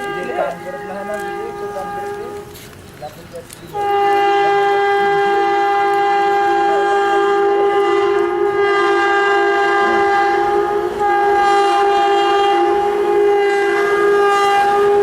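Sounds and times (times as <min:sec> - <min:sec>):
locomotive horn blast: 0:00.0 - 0:15.0.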